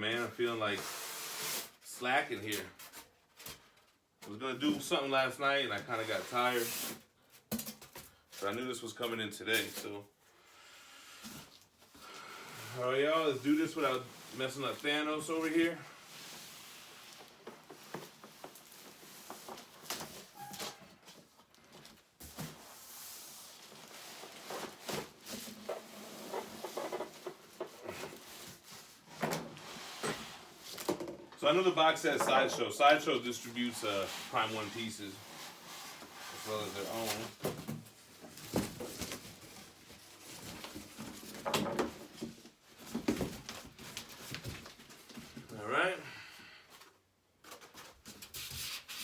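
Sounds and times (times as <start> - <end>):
packaging rustling and scraping: 12.7 - 31.0, 31.8 - 45.5
packing pieces knocking and rustling: 36.9 - 45.5.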